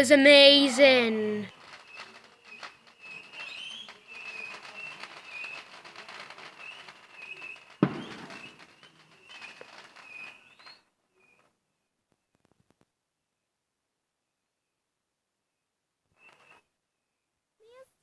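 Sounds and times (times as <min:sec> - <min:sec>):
fireworks crackling: 0:00.0 - 0:11.5
loud firework bang: 0:03.0 - 0:10.6.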